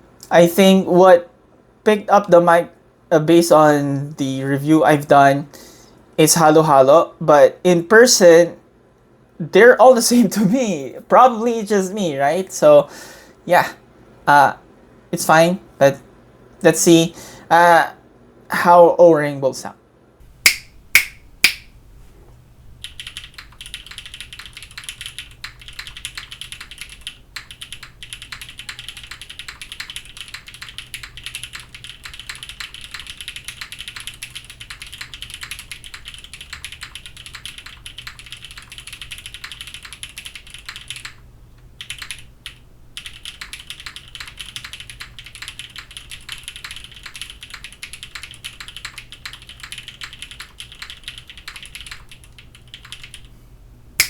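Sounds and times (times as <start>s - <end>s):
mechanical keyboard typing: 22.8s - 41.2s, 41.8s - 53.3s.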